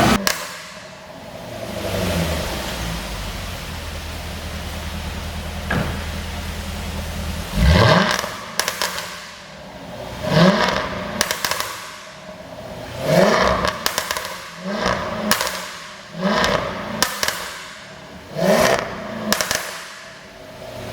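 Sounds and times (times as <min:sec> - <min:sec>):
exhaust pops and crackles: 0:00.0 - 0:01.0, 0:04.1 - 0:09.6, 0:10.5 - 0:12.2, 0:13.3 - 0:18.0, 0:18.6 - 0:20.2
car engine revving: 0:00.0 - 0:20.9.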